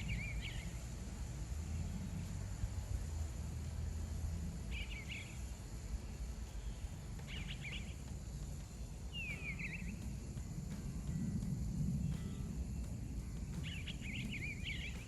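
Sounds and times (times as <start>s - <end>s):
bird warbling song: 0.0s - 0.8s, 4.7s - 5.4s, 6.6s - 8.1s, 9.1s - 10.1s, 12.0s - 15.0s
low outdoor rumble: 0.0s - 15.0s.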